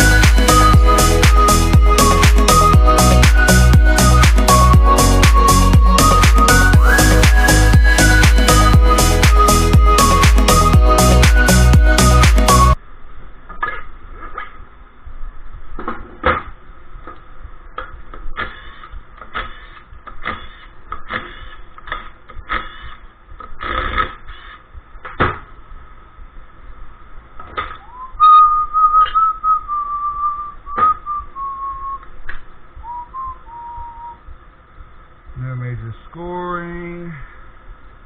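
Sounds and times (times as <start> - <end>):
person whistling: 0.0 - 12.8, 27.8 - 32.0, 32.8 - 34.2.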